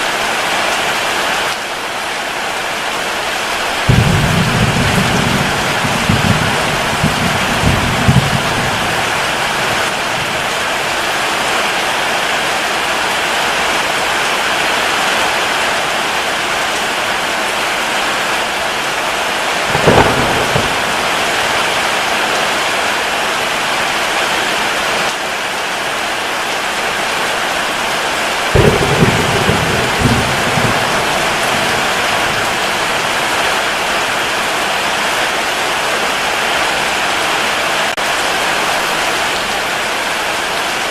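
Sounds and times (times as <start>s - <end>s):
steady rain falling: 0.0s - 40.9s
thunder rumbling and clapping: 3.7s - 11.2s, 19.6s - 22.7s, 28.4s - 34.6s.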